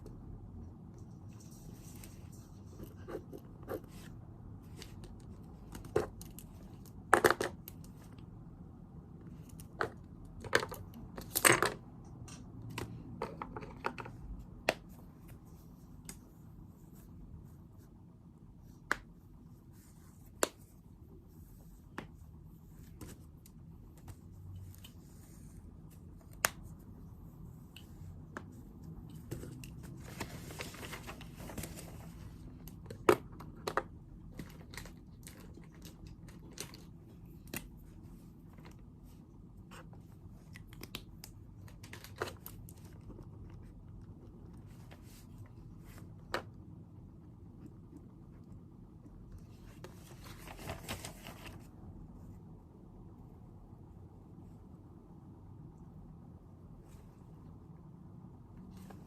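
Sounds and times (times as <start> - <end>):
low room hum: 0.0 - 59.0
paper rustling: 29.1 - 32.5, 49.6 - 51.7.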